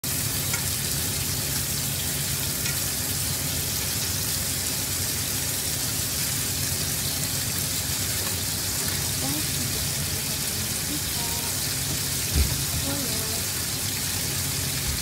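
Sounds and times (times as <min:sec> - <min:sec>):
food sizzling in a pan: 0:00.1 - 0:15.0.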